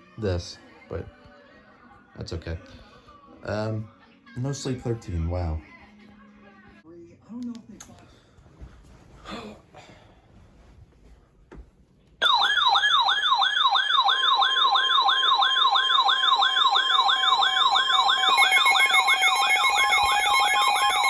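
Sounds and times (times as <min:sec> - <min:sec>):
rising siren-like electronic warble: 0:12.2 - 0:21.0
steady electronic tone: 0:16.4 - 0:21.0.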